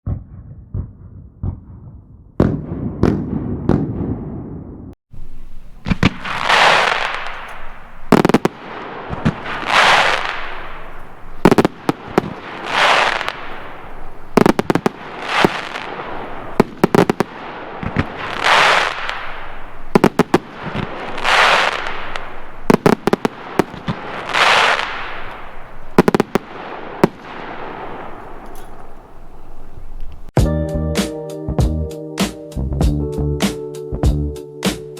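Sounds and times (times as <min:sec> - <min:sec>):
fireworks bangs: 0:00.1 - 0:30.3
fireworks hissing crackle: 0:05.2 - 0:30.3.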